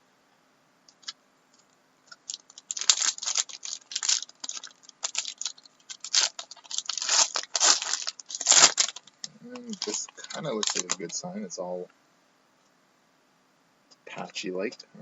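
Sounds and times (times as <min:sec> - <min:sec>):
card packaging crinkling and tearing: 0:02.1 - 0:11.2.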